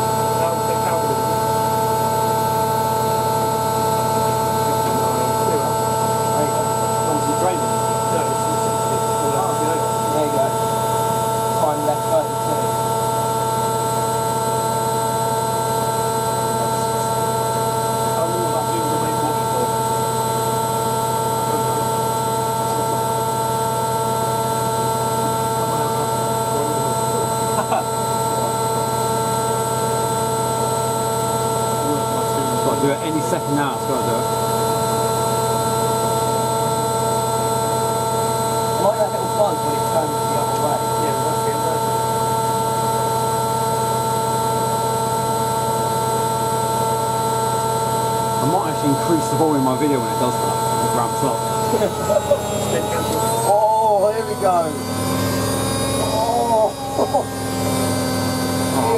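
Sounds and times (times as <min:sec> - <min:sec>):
washing machine humming and whining: 0:00.0 - 0:58.9
drum turning hum: 0:48.4 - 0:58.9.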